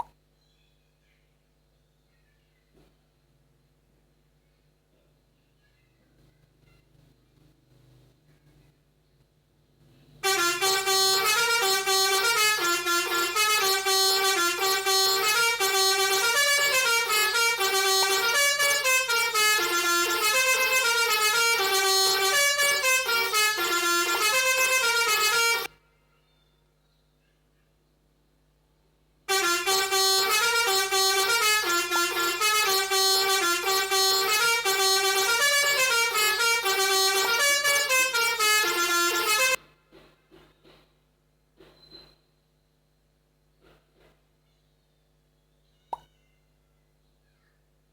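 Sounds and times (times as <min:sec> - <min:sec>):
melodica playing fast melody: 0:10.2 - 0:25.7, 0:29.3 - 0:39.6.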